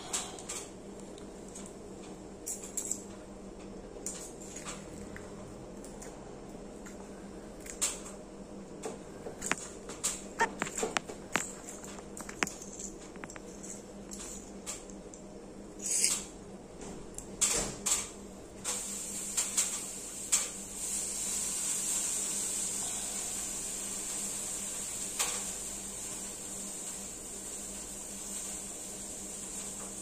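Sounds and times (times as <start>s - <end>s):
steady high hiss: 18.6s - 30.0s.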